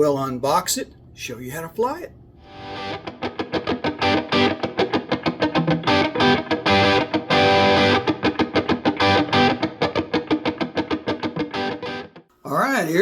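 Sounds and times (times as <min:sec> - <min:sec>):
distorted guitar riff: 0:02.4 - 0:12.2.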